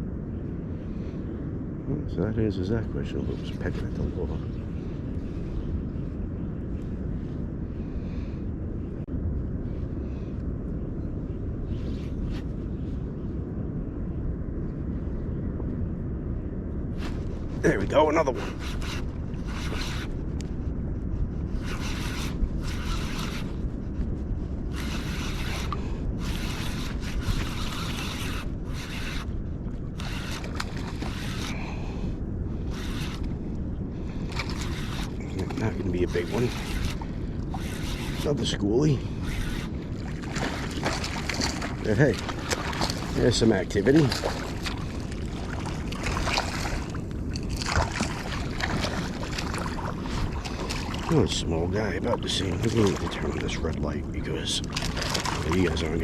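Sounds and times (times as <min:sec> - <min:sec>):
wind rumble on microphone: 0:00.0 - 0:56.0
shallow water sloshing: 0:17.0 - 0:56.0
fishing reel being cranked: 0:18.3 - 0:20.2, 0:21.5 - 0:23.7, 0:24.7 - 0:31.7, 0:32.6 - 0:33.3, 0:34.3 - 0:39.8, 0:40.4 - 0:44.7
water splash: 0:39.9 - 0:51.3, 0:54.6 - 0:55.9.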